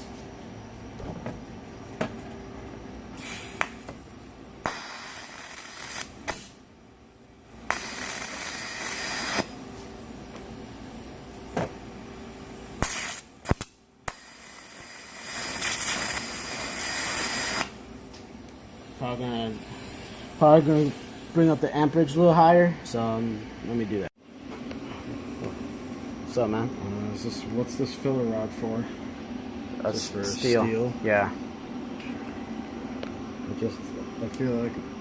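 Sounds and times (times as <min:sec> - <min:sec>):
welding arc hissing and crackling: 0:03.1 - 0:06.7, 0:07.4 - 0:11.5, 0:12.7 - 0:22.2.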